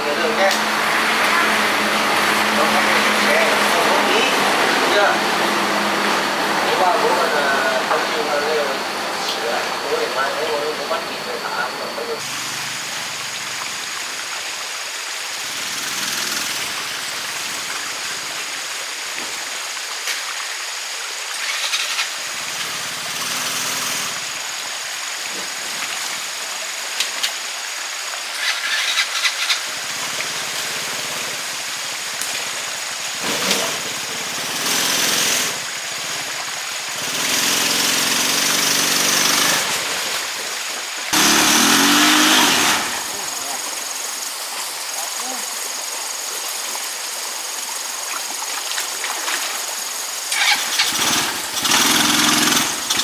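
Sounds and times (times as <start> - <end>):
wind and road noise: 0.0 - 14.4
motorbike engine running: 28.6 - 40.1, 41.2 - 43.6, 50.4 - 53.0.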